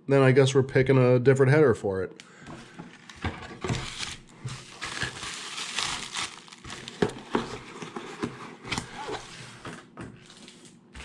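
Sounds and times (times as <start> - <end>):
packaging crinkling: 3.0 - 9.3, 10.2 - 11.0.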